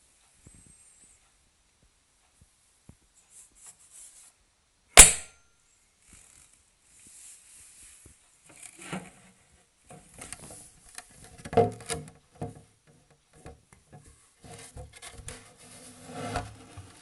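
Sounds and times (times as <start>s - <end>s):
sharp loud knock: 5.0s - 5.4s.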